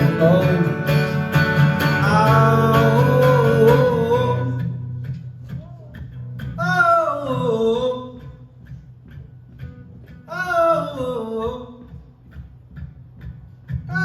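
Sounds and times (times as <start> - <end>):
person singing: 0.0 - 4.7
soft guitar accompaniment: 0.0 - 14.0.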